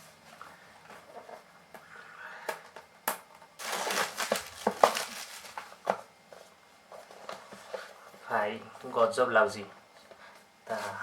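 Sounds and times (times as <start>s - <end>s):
packaging handling: 3.6s - 6.0s
packaging rustling: 3.6s - 6.0s.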